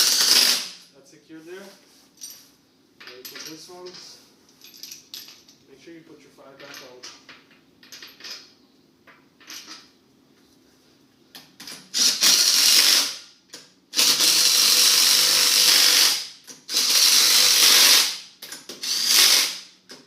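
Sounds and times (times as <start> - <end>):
cordless power wrench running: 0.0 - 0.7, 11.9 - 13.2, 14.0 - 18.2, 18.8 - 19.6
metal clinks of bolts: 2.2 - 5.6, 6.6 - 8.5.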